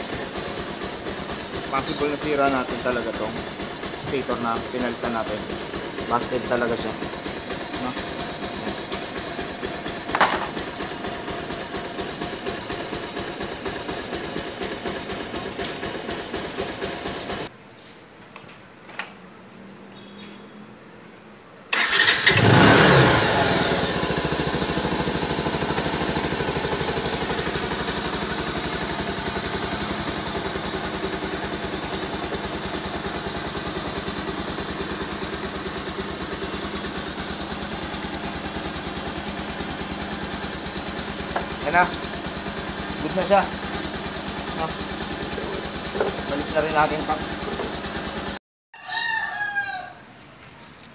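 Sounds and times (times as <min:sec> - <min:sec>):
motorcycle engine revving: 0:00.0 - 0:17.5, 0:21.8 - 0:48.4
small motorcycle engine idling: 0:00.0 - 0:17.5, 0:21.8 - 0:48.4
click: 0:50.7 - 0:50.9.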